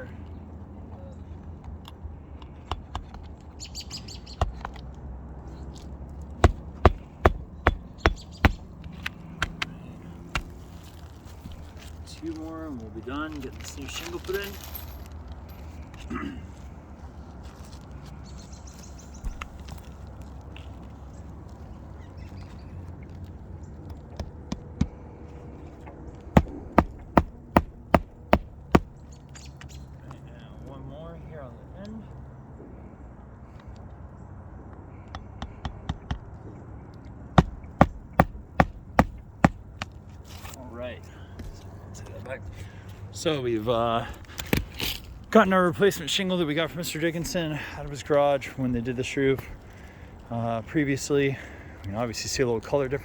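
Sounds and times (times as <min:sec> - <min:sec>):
hammer striking nail: 0:06.4 - 0:09.7, 0:10.4 - 0:10.6, 0:26.4 - 0:29.0, 0:35.1 - 0:36.3, 0:37.4 - 0:39.7.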